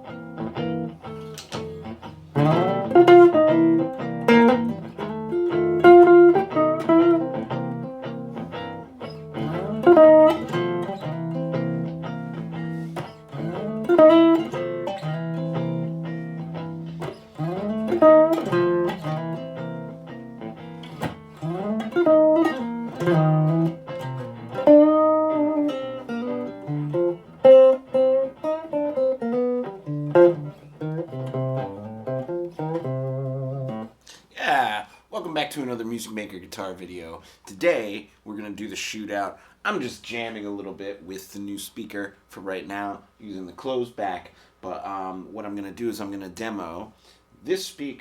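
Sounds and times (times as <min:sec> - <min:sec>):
electric guitar through amp: 0:00.0 - 0:33.9.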